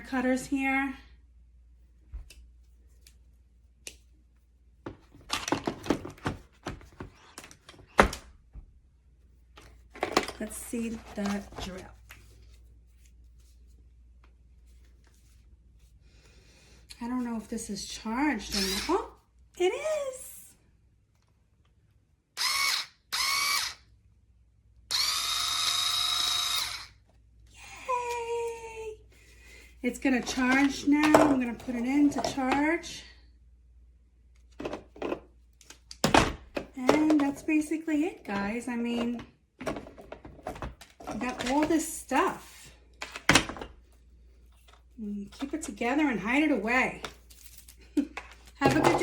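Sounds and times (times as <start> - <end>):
tools clattering and rustling: 9.6 - 11.8, 38.9 - 41.9, 47.2 - 49.0
cordless screwdriver motor whine: 18.5 - 18.9, 22.4 - 23.8, 24.9 - 27.0.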